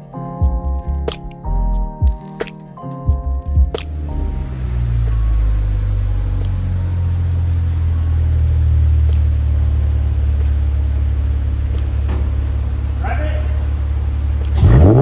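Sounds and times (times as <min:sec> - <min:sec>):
car engine idling: 0:03.0 - 0:15.0.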